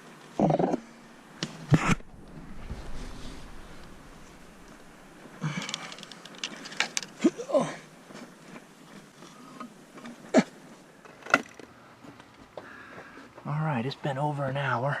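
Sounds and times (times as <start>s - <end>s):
rustling: 0.4s - 11.4s.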